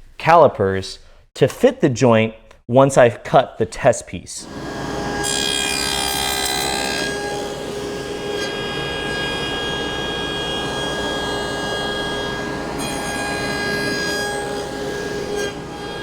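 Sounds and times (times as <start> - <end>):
table saw motor hum and whine: 4.5 - 16.0.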